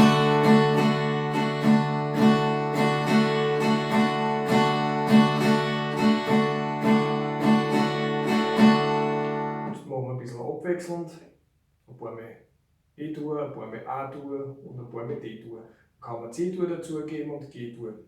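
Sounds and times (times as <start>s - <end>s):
acoustic guitar strumming: 0.0s - 9.8s.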